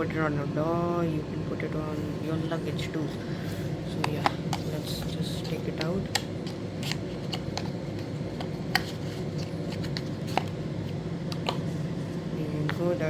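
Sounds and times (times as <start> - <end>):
steady low hum: 0.0 - 13.0
packaging clicks and rustles: 3.9 - 10.6.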